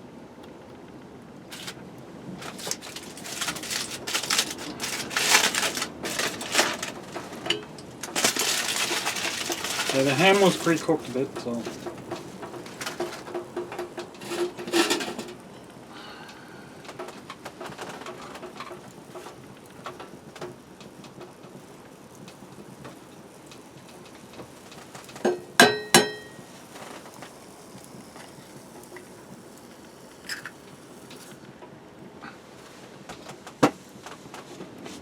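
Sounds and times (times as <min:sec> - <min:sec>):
ham sizzling in a pan: 0:02.4 - 0:16.1, 0:16.7 - 0:31.5
cookware clinking and handling: 0:12.7 - 0:15.4, 0:25.2 - 0:26.4
utensil striking a pan: 0:25.2 - 0:26.4.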